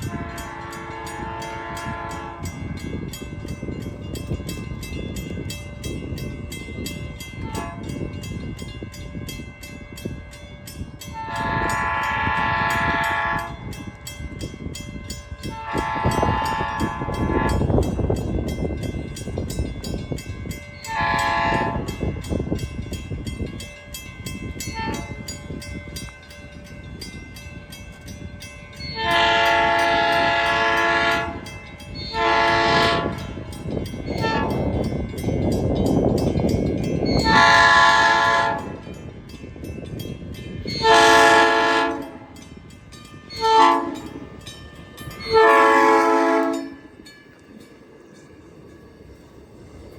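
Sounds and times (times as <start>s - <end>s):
train horn blasts: 0.0s - 2.8s, 7.4s - 8.0s, 11.1s - 13.8s, 15.4s - 18.0s, 20.9s - 22.0s, 28.9s - 33.3s, 34.1s - 34.7s, 37.2s - 38.8s, 40.8s - 42.4s, 43.3s - 44.2s, 45.2s - 46.9s
train rumbling on rails: 0.0s - 49.9s.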